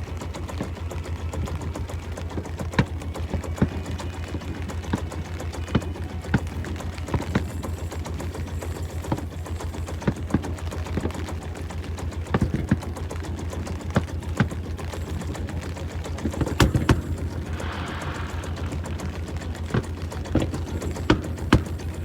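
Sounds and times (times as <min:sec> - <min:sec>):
boat engine throbbing: 0:00.0 - 0:22.0.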